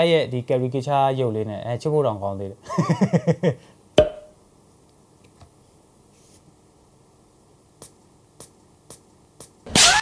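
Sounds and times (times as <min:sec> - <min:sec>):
sharp knock with brief ring: 0:04.0 - 0:04.4.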